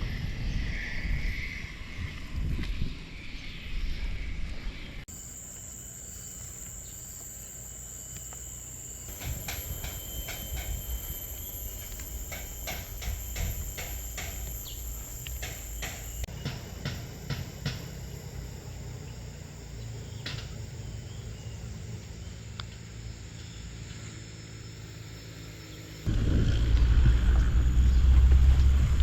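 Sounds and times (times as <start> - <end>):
high-pitched insect chorus: 5.1 - 26.4
sharp clicks: 5.4 - 23.5
low rumble: 26.1 - 29.0.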